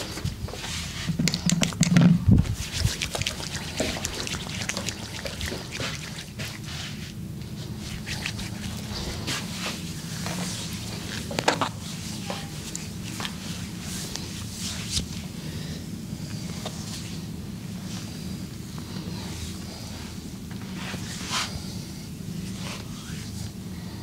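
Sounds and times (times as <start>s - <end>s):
hands rubbing on skin: 2.5s - 15.2s.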